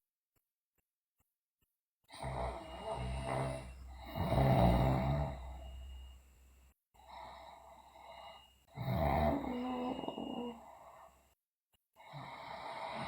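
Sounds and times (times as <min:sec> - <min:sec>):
girl snoring loudly: 0:02.1 - 0:06.1, 0:08.7 - 0:11.0, 0:12.0 - 0:13.0.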